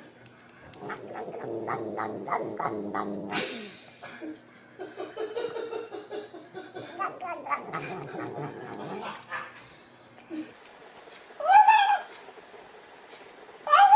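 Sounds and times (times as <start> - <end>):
cat crying: 6.9 - 8.5, 13.7 - 13.9
cat making wavering calls: 7.0 - 8.7, 11.4 - 12.1, 13.7 - 13.9.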